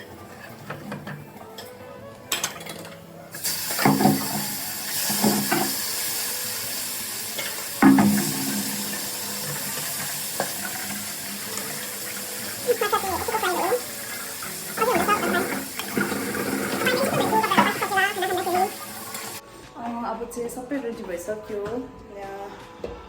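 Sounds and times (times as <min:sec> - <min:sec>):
utensils clinking: 0:00.0 - 0:05.8, 0:07.3 - 0:19.4
pots and dishes clattering: 0:00.0 - 0:06.3, 0:07.2 - 0:19.4
tap water running into sink: 0:03.4 - 0:19.4.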